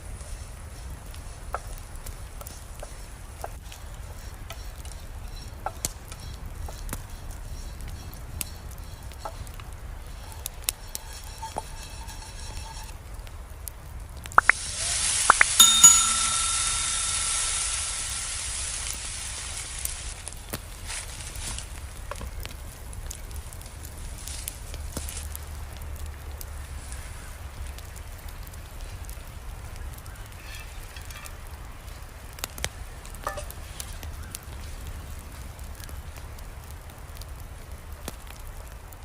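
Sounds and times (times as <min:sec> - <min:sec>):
campfire crackles: 0:00.0 - 0:39.0
food sizzling in hot oil: 0:07.6 - 0:21.7
metal clinks: 0:15.6 - 0:18.3.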